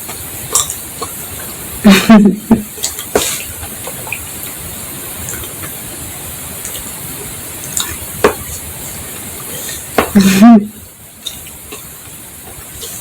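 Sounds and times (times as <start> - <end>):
steady hiss: 0.0 - 13.0
wet mouth clicks eating: 0.5 - 1.2, 2.8 - 4.3, 7.7 - 8.0, 11.2 - 11.9.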